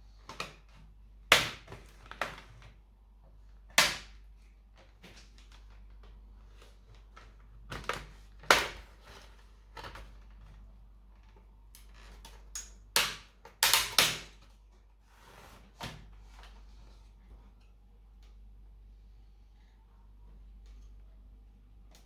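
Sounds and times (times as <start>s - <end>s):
plastic laptop casing clicks: 11.8s - 14.5s.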